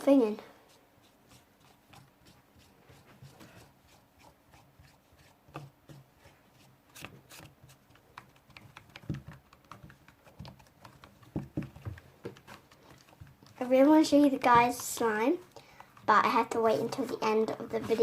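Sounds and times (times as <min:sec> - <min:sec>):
hands clicking and tapping on table: 0:07.0 - 0:13.6.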